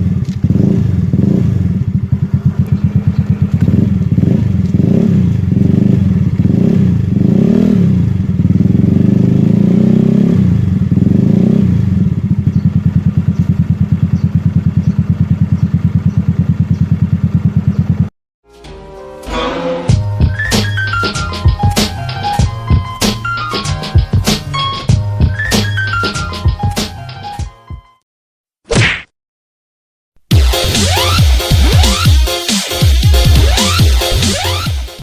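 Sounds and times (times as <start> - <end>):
scooter engine idling and revving: 0.0 - 18.1.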